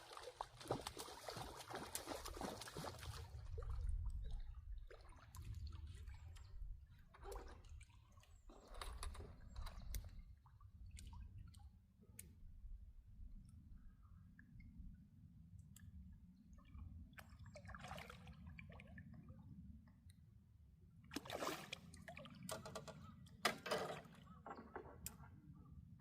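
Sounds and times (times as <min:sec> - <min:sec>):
water splashing and dripping: 0:00.0 - 0:12.3, 0:21.1 - 0:22.9.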